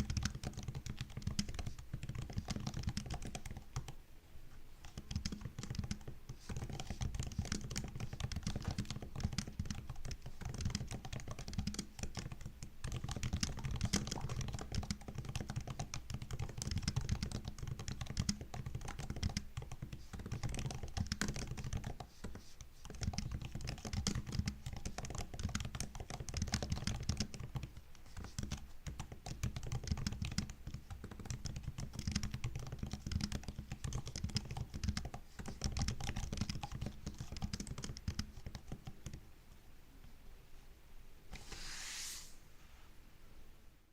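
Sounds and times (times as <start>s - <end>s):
fast typing on laptop keyboard: 0.0s - 4.0s, 4.8s - 39.2s.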